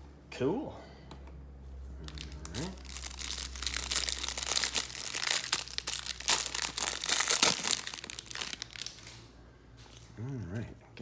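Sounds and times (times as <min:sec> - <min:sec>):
plastic wrapper crinkling and tearing: 0:02.0 - 0:09.3.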